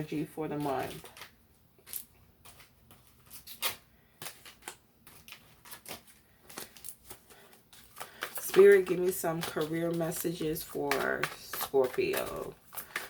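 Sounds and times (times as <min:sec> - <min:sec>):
cards being shuffled: 0:00.0 - 0:13.0.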